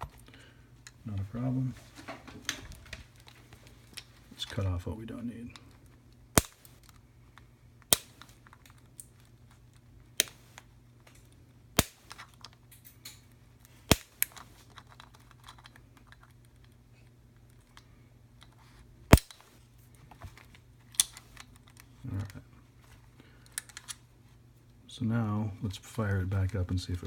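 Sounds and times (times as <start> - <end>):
wire cutters snipping: 6.4 - 6.9, 7.8 - 8.3, 11.8 - 13.2, 13.9 - 14.4, 19.1 - 19.5.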